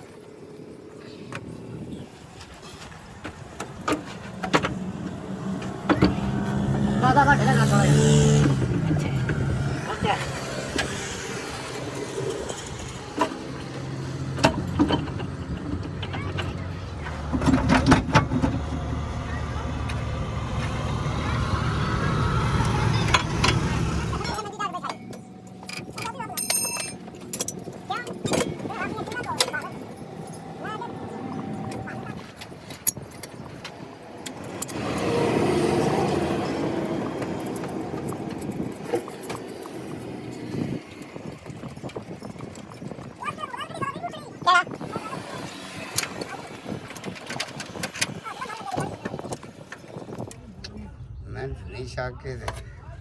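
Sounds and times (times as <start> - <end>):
engine humming: 3.0 - 53.0
road vehicle passing: 3.1 - 26.2, 26.9 - 53.0
metallic clinks and knocks: 24.8 - 34.8.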